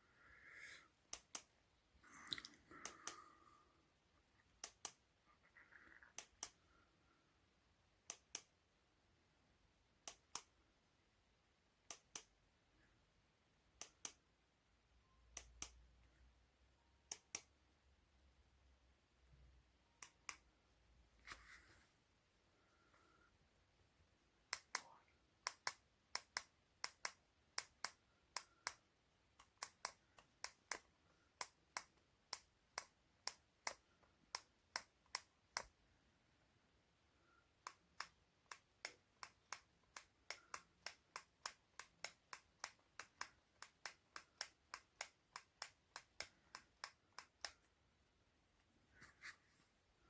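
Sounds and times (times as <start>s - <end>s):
sharp dry clicks: 1.1s - 1.6s, 4.5s - 5.0s, 6.1s - 6.6s, 8.1s - 8.5s, 24.5s - 35.8s, 37.6s - 47.7s.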